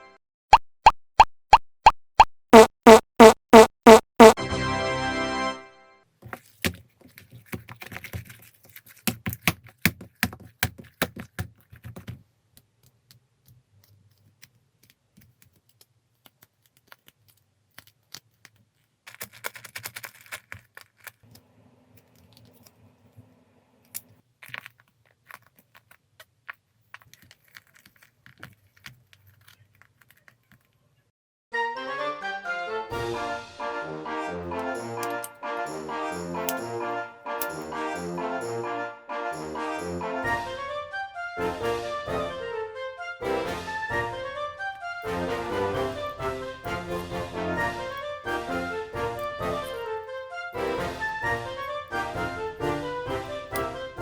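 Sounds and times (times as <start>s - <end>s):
tape crackling and rustling: 6.1s - 31.1s.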